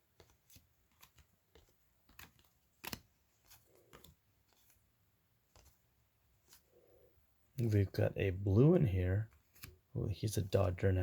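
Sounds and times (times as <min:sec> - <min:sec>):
trading cards flicking: 0:00.2 - 0:04.6.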